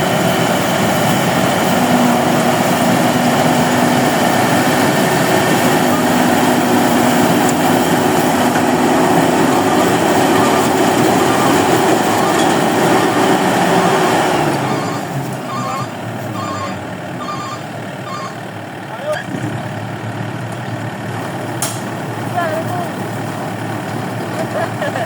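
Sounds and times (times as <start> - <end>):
combine harvester engine running: 0.0 - 25.0
rhythmic beeper: 8.4 - 18.5.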